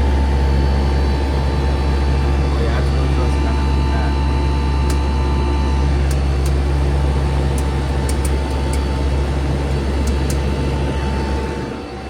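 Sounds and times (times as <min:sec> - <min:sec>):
heat pump humming: 0:00.0 - 0:12.0
ice crackling ticks: 0:07.6 - 0:08.9.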